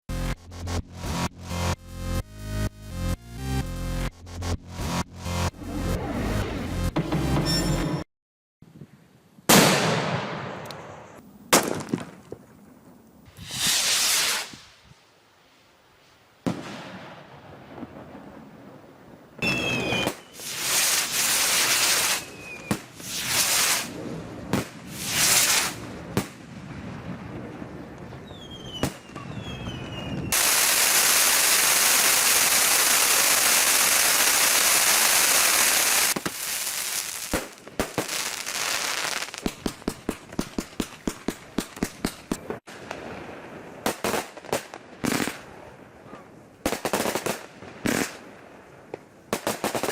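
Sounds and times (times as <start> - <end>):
firework bangs: 9.5 - 12.3, 13.3 - 14.8, 16.4 - 18.5, 19.4 - 45.5
loud steady hiss: 13.2 - 17.4, 19.4 - 26.2, 30.3 - 40.1
firework whistles: 13.3 - 15.0, 19.4 - 24.0, 24.6 - 25.9, 28.0 - 40.0.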